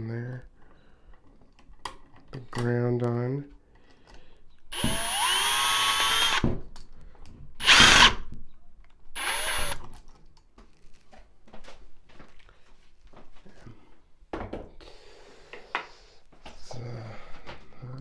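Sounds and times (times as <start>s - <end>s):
power drill running: 4.7s - 6.5s, 7.6s - 8.2s, 9.2s - 9.8s.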